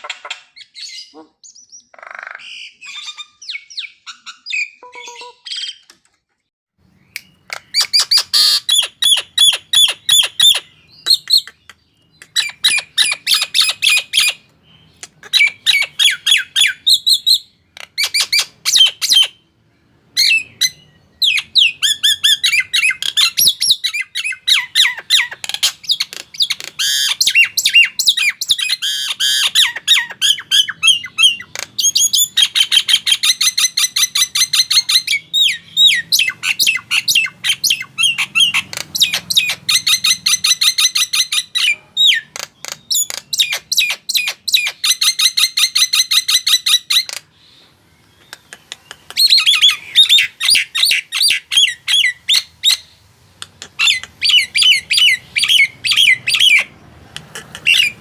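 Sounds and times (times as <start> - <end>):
starling calling harshly: 53.6 - 58.0.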